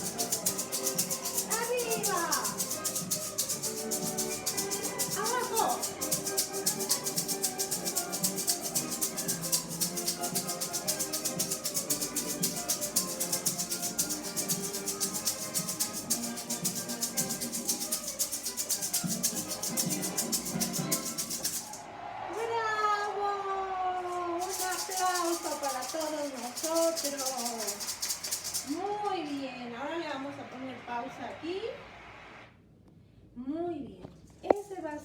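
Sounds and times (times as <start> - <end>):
instrumental music: 0.0 - 21.8, 24.4 - 29.2
maraca shaking: 0.0 - 30.7.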